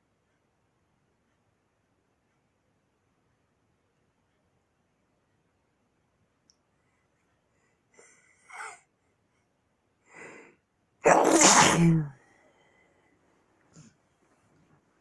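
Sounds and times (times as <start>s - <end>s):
man sneezing: 11.0s - 12.1s.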